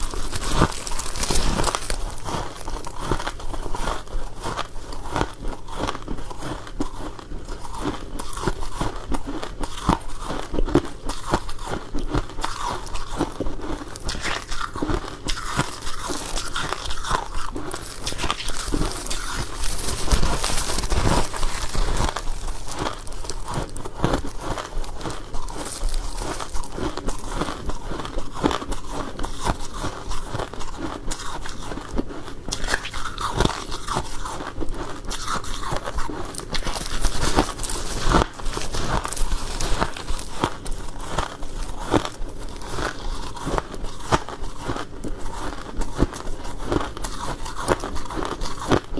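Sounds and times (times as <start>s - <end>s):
crunching and chewing frost ice: 0.0s - 48.9s.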